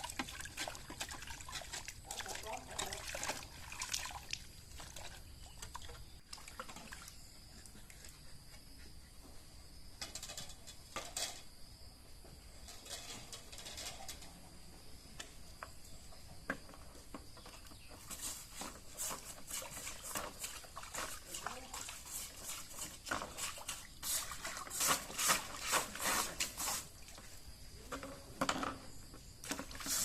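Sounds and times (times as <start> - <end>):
hissy scraping strokes: 29.6 - 30.0.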